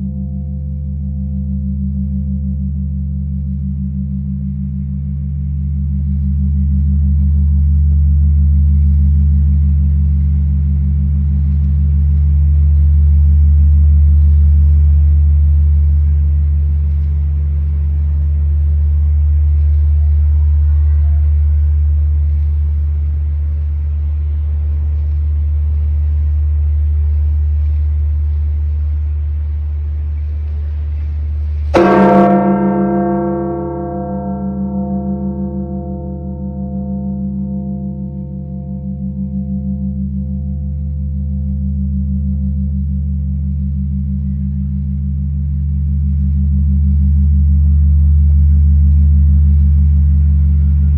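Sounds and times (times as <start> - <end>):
great bell tolling: 31.7 - 45.2.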